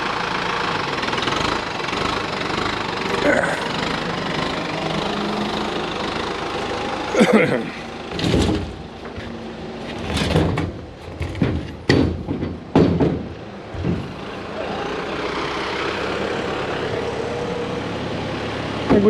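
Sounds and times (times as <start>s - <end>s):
engine running: 0.0s - 10.3s, 13.2s - 19.0s
heavy clunks of logs: 8.1s - 14.3s.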